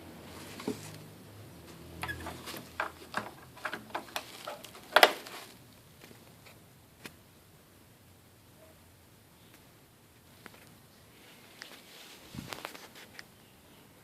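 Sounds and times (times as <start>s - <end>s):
light clicks and knocks: 2.0s - 5.4s.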